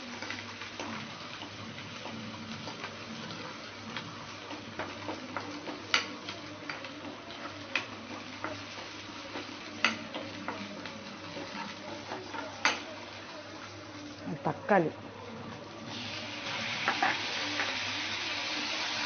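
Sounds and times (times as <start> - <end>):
food sizzling in a pan: 0.0 - 19.0.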